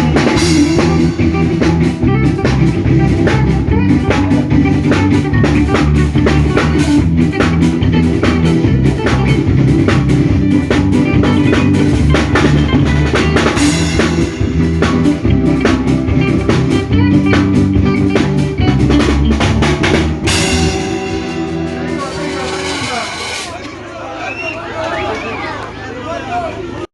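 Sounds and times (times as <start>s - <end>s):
band music: 0.0s - 25.2s
cymbal crash: 20.3s - 23.6s.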